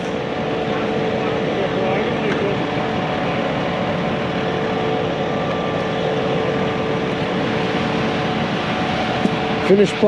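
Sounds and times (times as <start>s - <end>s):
steady mechanical whine: 0.0s - 10.0s
truck engine drone: 0.0s - 10.0s.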